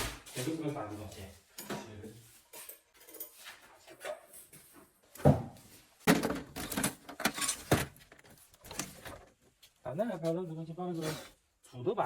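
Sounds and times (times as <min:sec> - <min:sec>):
tools knocking and clattering: 0:01.6 - 0:09.6.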